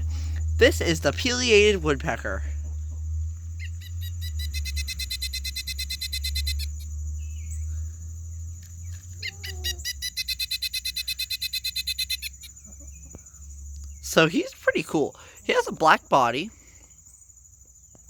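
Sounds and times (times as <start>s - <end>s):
toy woodpecker call: 3.6s - 6.9s, 9.1s - 12.6s.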